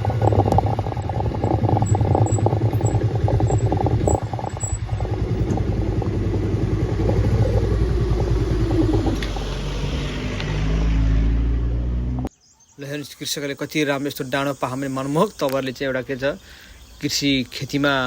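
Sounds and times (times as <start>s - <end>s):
motorcycle engine running: 0.0s - 9.7s.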